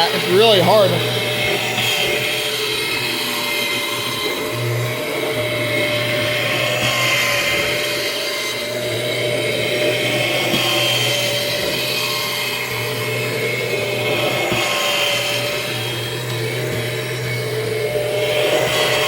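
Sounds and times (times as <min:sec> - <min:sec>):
vacuum cleaner motor whining: 0:00.0 - 0:19.0.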